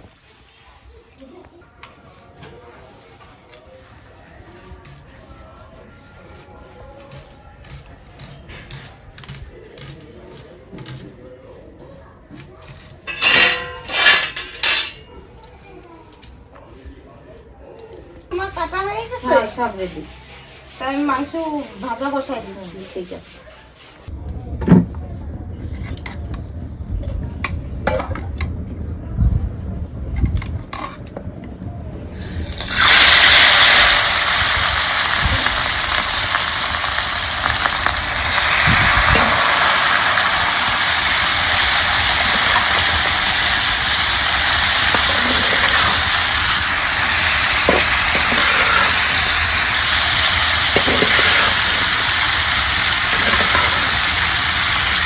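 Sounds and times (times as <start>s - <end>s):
chicken sizzling in hot oil: 32.2s - 55.0s.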